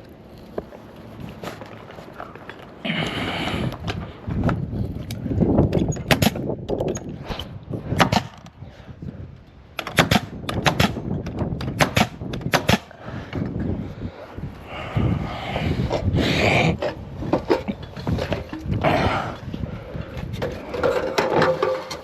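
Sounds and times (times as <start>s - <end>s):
nail gun firing into timber: 6.1s - 6.4s, 8.0s - 8.5s, 9.8s - 12.9s.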